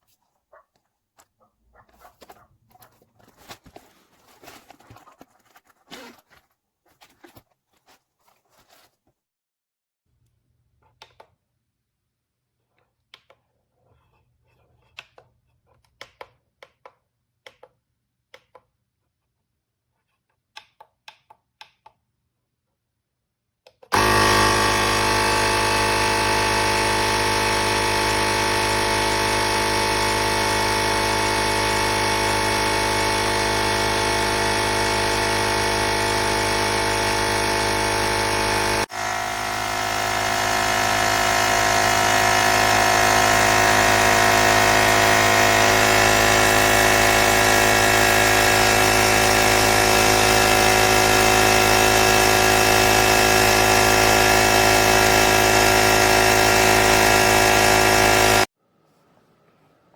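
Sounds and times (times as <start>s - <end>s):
air compressor running: 23.9s - 58.5s.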